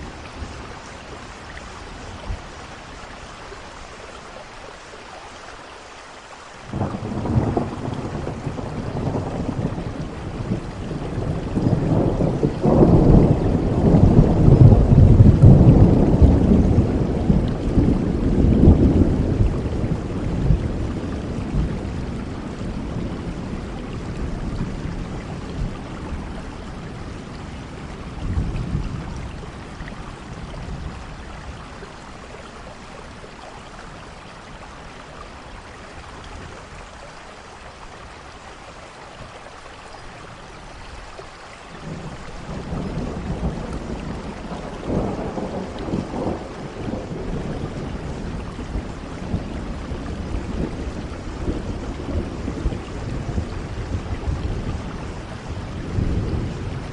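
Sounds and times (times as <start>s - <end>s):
rain falling: 0.0s - 56.9s
rolling thunder: 6.7s - 31.9s, 41.8s - 56.9s.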